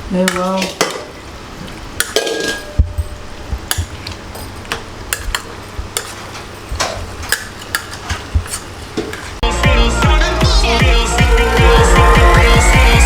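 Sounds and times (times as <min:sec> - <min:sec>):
steady low hum: 0:00.0 - 0:13.0
clinking and knocking: 0:02.0 - 0:09.4.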